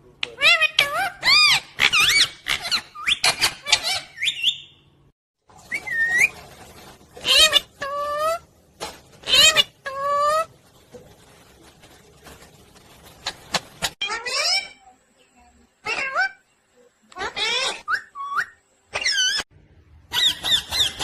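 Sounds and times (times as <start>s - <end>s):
parrot chirping and squawking: 0.3s - 4.8s, 7.2s - 8.5s, 9.2s - 10.5s, 13.2s - 14.8s, 15.8s - 16.4s, 17.1s - 19.4s, 20.1s - 21.0s.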